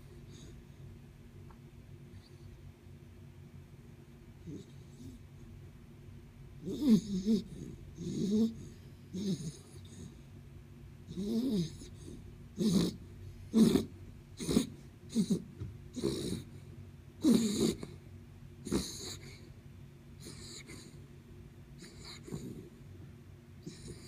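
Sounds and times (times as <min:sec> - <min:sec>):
dog snoring: 0:04.4 - 0:05.2, 0:06.6 - 0:10.3, 0:11.0 - 0:18.0, 0:18.6 - 0:19.5, 0:20.2 - 0:21.0, 0:21.8 - 0:22.8, 0:23.6 - 0:24.0.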